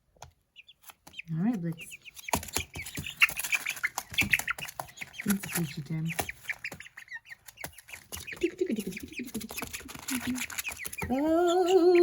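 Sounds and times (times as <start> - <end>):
chicks peeping: 0.2 - 12.0
person humming: 11.0 - 12.0.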